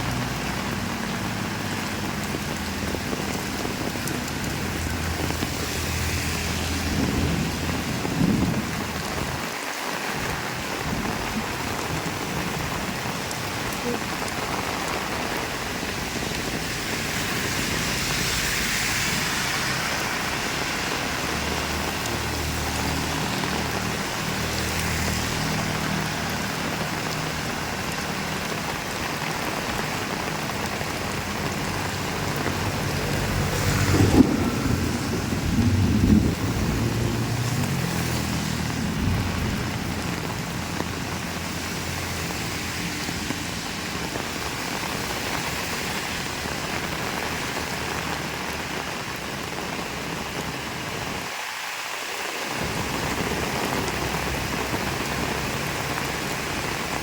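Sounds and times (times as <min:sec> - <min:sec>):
heavy rain pouring: 0:00.0 - 0:57.0
thunder rumbling: 0:01.3 - 0:09.6, 0:29.1 - 0:45.7.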